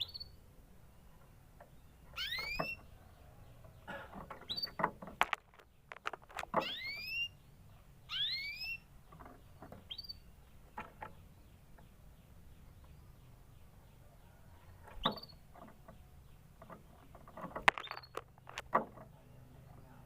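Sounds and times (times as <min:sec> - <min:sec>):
canary chirps: 0:00.0 - 0:18.6
canary whistled calls: 0:02.2 - 0:02.9, 0:06.6 - 0:07.4, 0:08.1 - 0:08.9
sharp clicks: 0:17.6 - 0:18.7.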